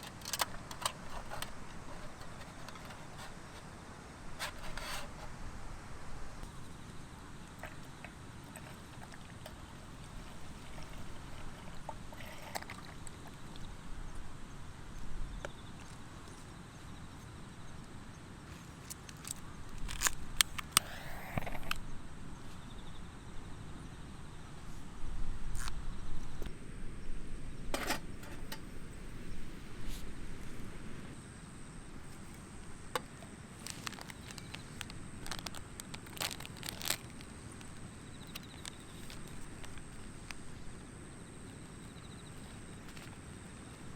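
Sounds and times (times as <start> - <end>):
gear handling clicks: 0.0 - 3.4, 18.6 - 21.8.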